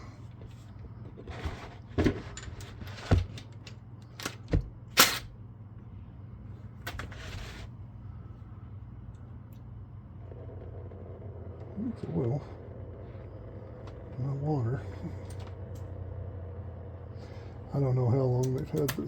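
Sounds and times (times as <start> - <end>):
tools and metal parts clinking: 2.0 - 5.3.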